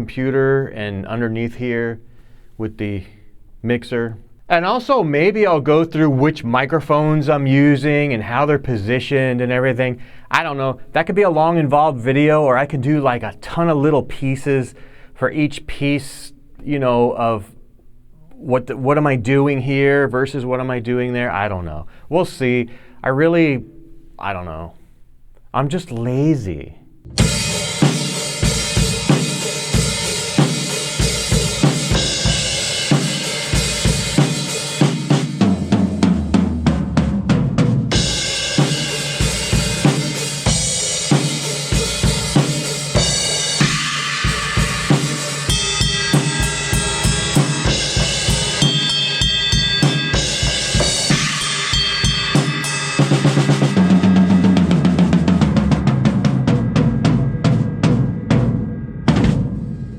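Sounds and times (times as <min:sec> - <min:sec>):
bass drum strokes: 0:26.8 - 0:59.9
crashing cymbals: 0:27.1 - 0:35.6, 0:37.9 - 0:59.9.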